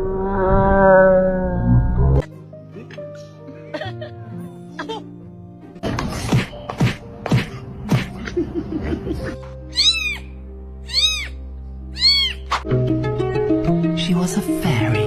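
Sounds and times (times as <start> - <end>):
cat meowing: 9.7 - 12.6.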